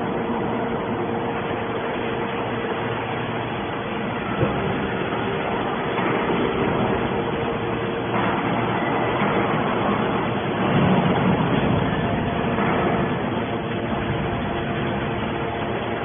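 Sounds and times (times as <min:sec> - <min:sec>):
dense mechanical noise: 0:00.0 - 0:16.0
hydraulic power unit hum: 0:00.0 - 0:16.0.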